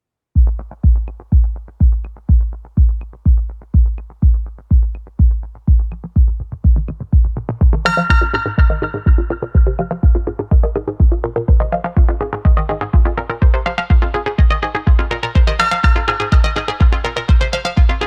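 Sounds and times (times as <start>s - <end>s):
electronic music with kick drum: 0.4s - 18.0s
synthesizer layer: 5.9s - 18.0s.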